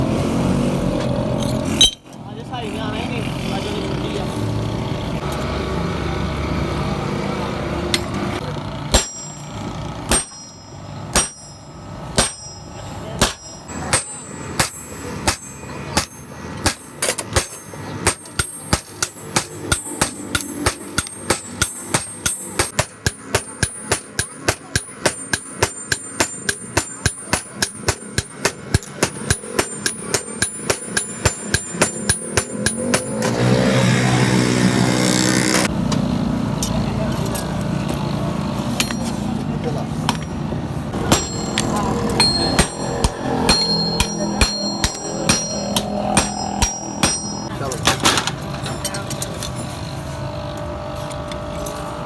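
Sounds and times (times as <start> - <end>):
hammer striking metal on anvil: 1.4 - 2.2, 7.9 - 35.7, 38.7 - 39.4, 40.0 - 48.2.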